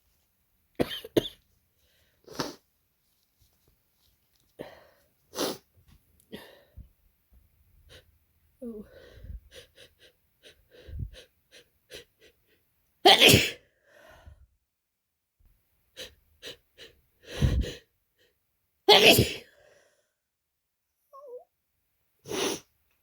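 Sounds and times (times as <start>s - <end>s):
person sneezing wetly: 13.1s - 13.6s, 18.9s - 19.5s.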